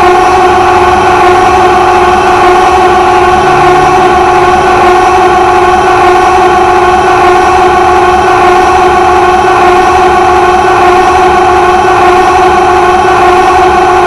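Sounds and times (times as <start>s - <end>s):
droning wall of cartoon voices: 0.5s - 7.8s.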